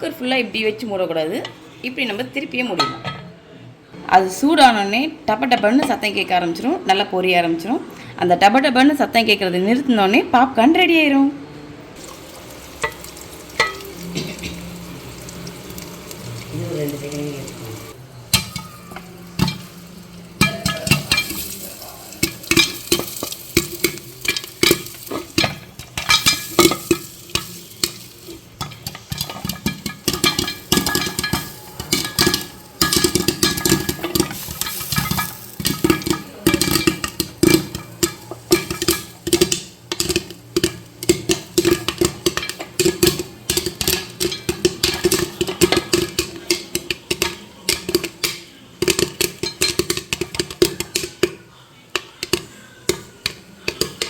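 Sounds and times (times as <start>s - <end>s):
popcorn popping: 12.0s - 54.0s.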